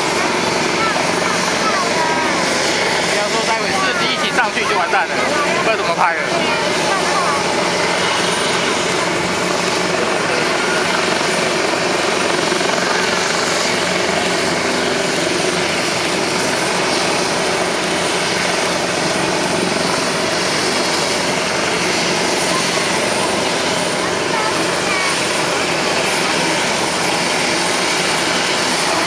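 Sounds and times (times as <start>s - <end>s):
helicopter rotor and turbine: 0.0s - 29.0s.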